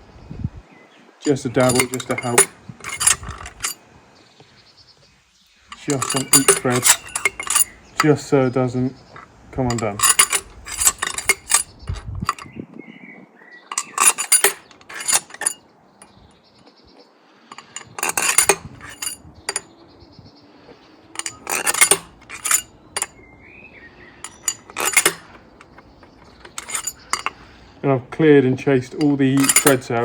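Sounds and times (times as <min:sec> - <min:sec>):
metal parts clinking together: 0:01.3 - 0:03.8, 0:05.7 - 0:08.3, 0:09.0 - 0:12.5, 0:13.7 - 0:16.2, 0:17.5 - 0:19.8, 0:21.1 - 0:23.3, 0:24.2 - 0:27.8, 0:28.7 - 0:30.0.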